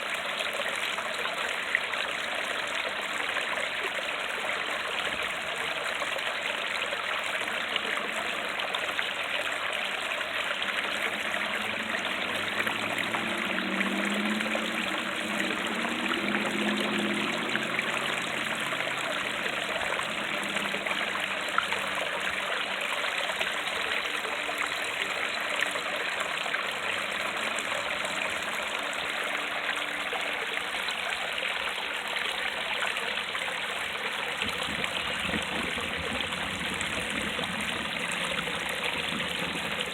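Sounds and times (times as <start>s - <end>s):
water splashing over rocks: 0.0s - 39.9s.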